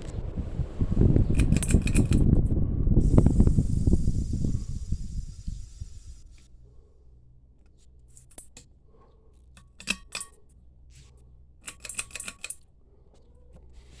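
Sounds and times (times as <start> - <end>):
ceiling fan motor humming: 0.0 - 8.8.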